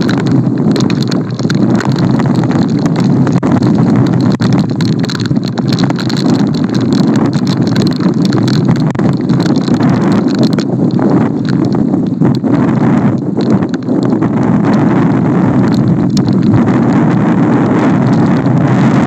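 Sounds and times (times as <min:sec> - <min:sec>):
small clicks and taps: 0:00.0 - 0:12.5, 0:13.1 - 0:14.8, 0:15.7 - 0:16.6
rain: 0:00.0 - 0:19.0
wind buffeting microphone: 0:00.0 - 0:19.0.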